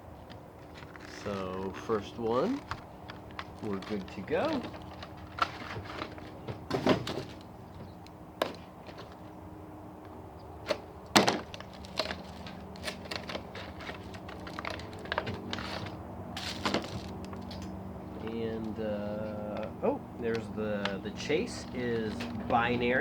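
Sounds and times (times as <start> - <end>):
plastic packaging crinkling: 0.4 - 7.5, 11.2 - 17.6.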